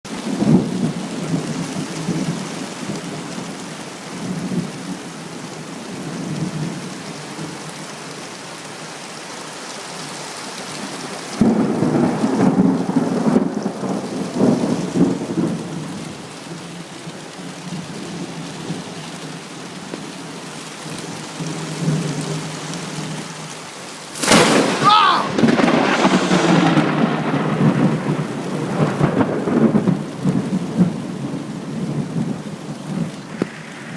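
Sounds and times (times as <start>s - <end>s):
heavy rain: 0.1s - 33.9s
thunder crack: 24.2s - 30.1s, 33.3s - 33.9s
thunder rumbling: 24.2s - 32.4s, 33.0s - 33.9s.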